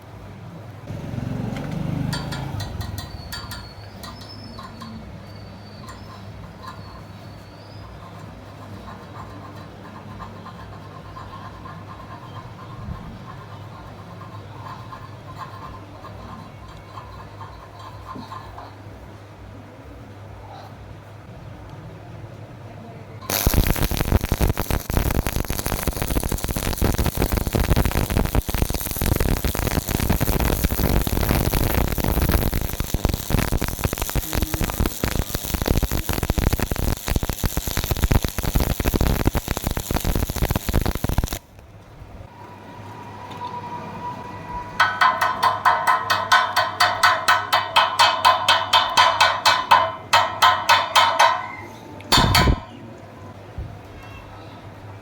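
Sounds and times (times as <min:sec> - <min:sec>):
hammer striking steel: 0:02.1 - 0:04.9, 0:44.8 - 0:52.8
welding arc crackling: 0:23.2 - 0:41.6, 0:44.8 - 0:51.5, 0:52.1 - 0:52.7.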